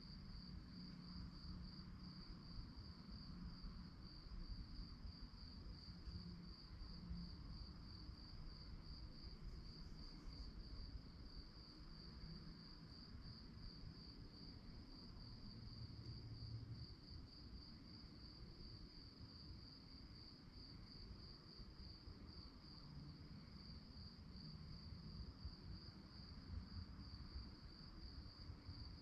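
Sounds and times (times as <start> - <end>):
crickets chirping: 0.0 - 29.0.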